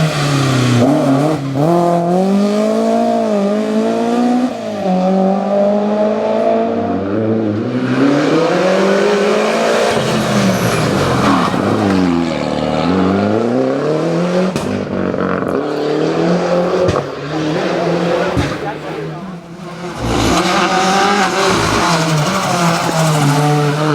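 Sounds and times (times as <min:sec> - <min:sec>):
car engine accelerating: 0:00.0 - 0:23.9
engine pops: 0:14.5 - 0:22.3.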